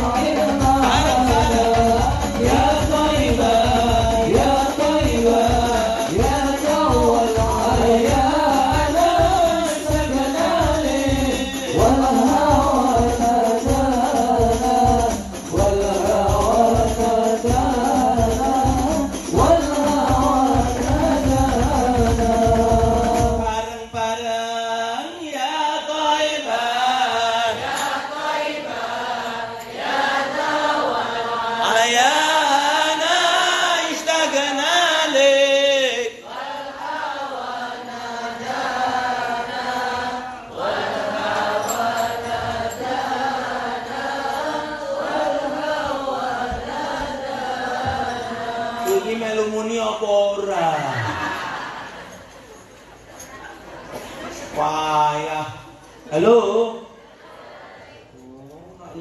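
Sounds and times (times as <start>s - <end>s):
hand drum beat: 0.0s - 23.7s, 40.8s - 49.1s
person singing devotional song: 0.0s - 49.6s.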